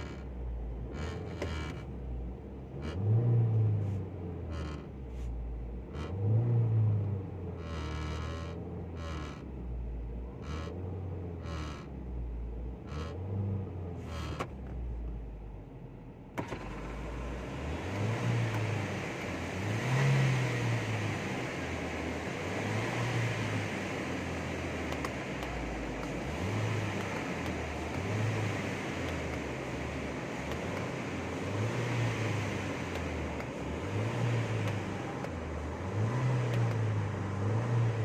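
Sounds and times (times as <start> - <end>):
car engine running: 0.0 - 38.0
click: 24.9 - 26.2, 36.5 - 36.8.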